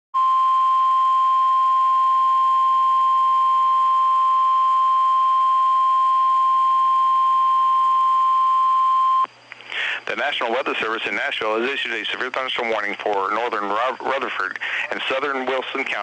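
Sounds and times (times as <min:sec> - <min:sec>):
steady alarm beep: 0:00.2 - 0:09.3.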